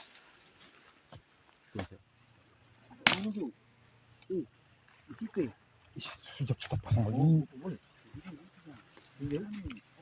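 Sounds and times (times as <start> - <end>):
night insects chirring: 0.0 - 10.0
sharp crack: 3.0 - 3.4.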